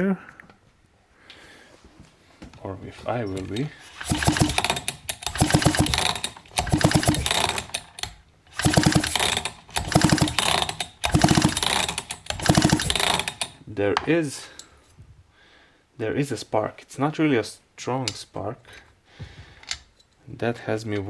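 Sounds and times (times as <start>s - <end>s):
chainsaw recoil starter pulls: 3.3s - 13.6s.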